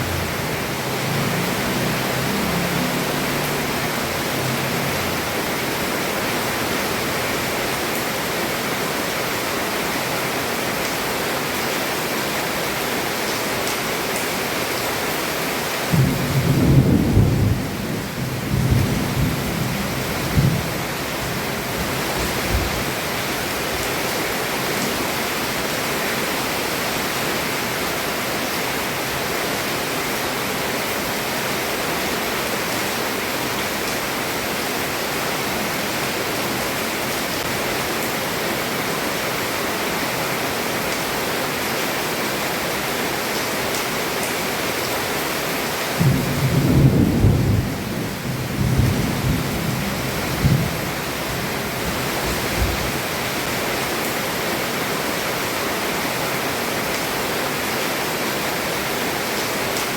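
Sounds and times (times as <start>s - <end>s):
heavy rain on a roof: 0.0s - 59.9s
thunder rumbling: 15.9s - 20.8s, 46.0s - 50.9s.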